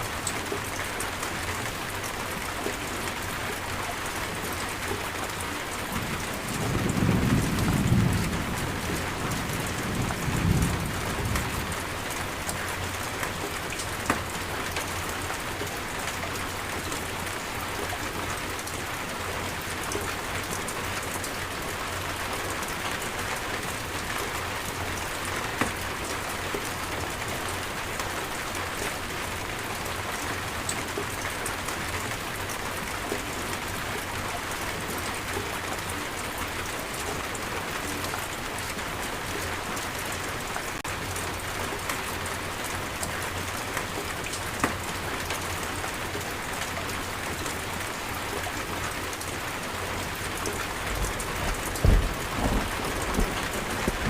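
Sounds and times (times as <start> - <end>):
heavy rain falling: 0.0 - 54.0
thunder rumbling: 6.0 - 11.8, 50.6 - 54.0.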